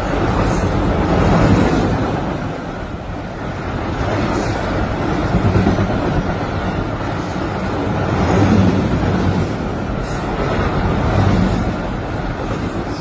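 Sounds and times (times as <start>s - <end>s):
train wheels rumbling on rails: 0.0s - 13.0s.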